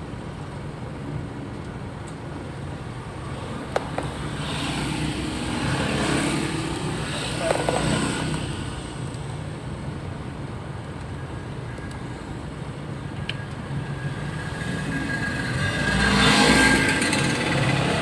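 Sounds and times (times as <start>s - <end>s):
vehicle passing by: 4.2s - 9.0s, 14.0s - 18.0s.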